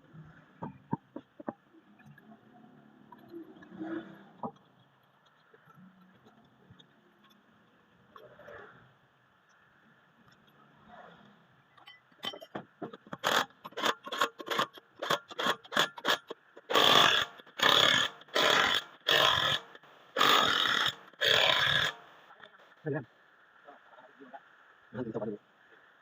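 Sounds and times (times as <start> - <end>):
sharp tool clicks: 13.2 - 22.0.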